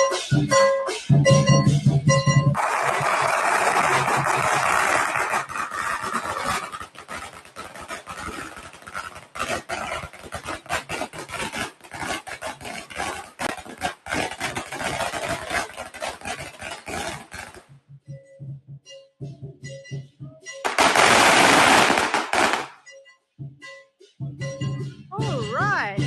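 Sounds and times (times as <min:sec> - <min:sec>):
firecrackers cracking: 0:02.6 - 0:17.7, 0:20.6 - 0:22.8.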